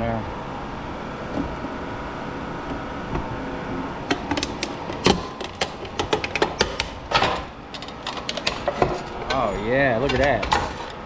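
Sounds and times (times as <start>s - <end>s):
metal clicks and knocks: 4.1s - 9.4s, 10.0s - 11.0s.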